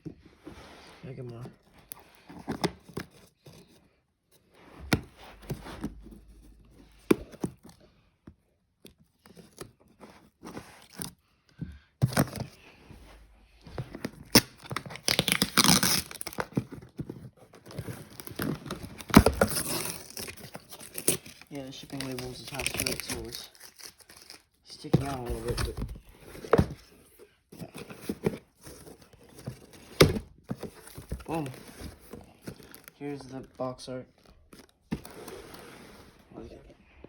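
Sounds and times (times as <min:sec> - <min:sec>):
tape and cardboard tearing: 0:14.2 - 0:16.7, 0:17.8 - 0:24.5.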